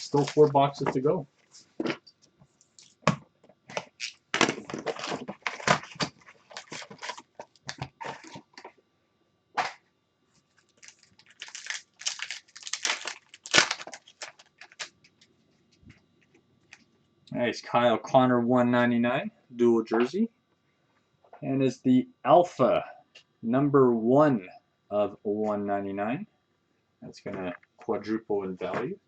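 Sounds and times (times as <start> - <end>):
packaging crinkling and tearing: 0.0 - 0.6, 3.7 - 8.5, 10.6 - 15.3.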